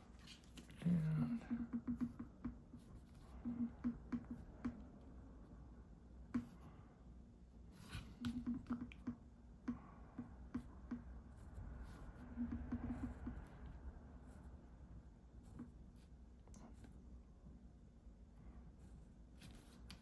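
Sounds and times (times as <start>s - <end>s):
low room hum: 0.0s - 20.0s
drawing tool tapping on paper: 1.6s - 2.8s, 3.4s - 4.8s.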